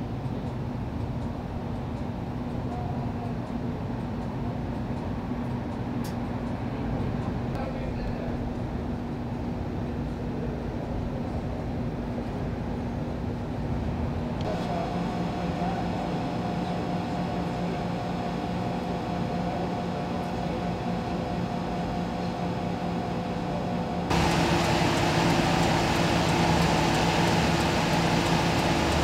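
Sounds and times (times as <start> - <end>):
vehicle engines idling: 13.3 - 29.0
hissy drone: 24.1 - 29.0.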